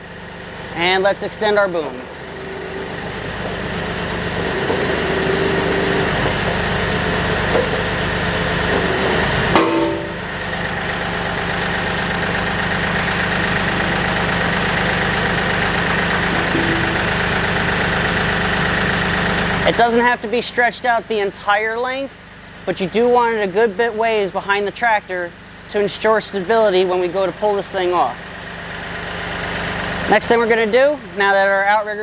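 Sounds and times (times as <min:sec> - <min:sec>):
tractor diesel engine running: 0:00.0 - 0:32.0
high hydraulic whine: 0:00.8 - 0:19.8
sharp clunk: 0:08.7 - 0:10.2.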